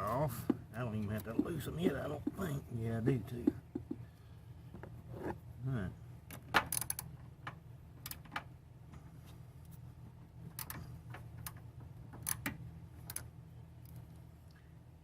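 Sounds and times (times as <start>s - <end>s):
metallic clicks of hand tools: 6.3s - 7.1s, 10.5s - 11.6s.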